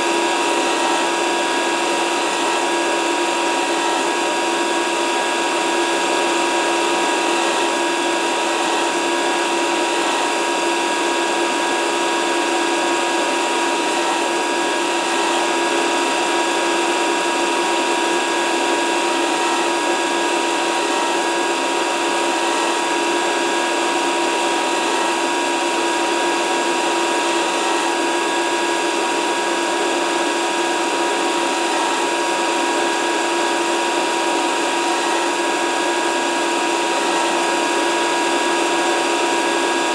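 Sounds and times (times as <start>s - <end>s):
grinding wheel on metal: 0.3s - 4.2s, 6.7s - 10.6s, 13.4s - 16.1s, 18.9s - 21.3s, 22.1s - 23.0s, 24.6s - 25.3s, 27.1s - 28.0s, 31.4s - 32.2s, 33.9s - 38.1s.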